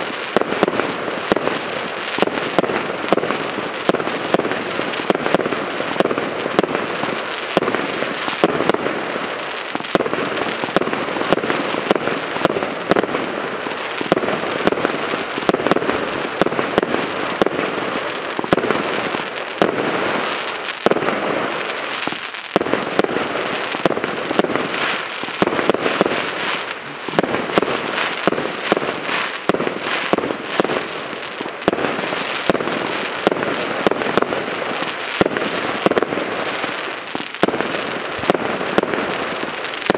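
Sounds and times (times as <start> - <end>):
fireworks aerial bursts: 0.0 - 39.9.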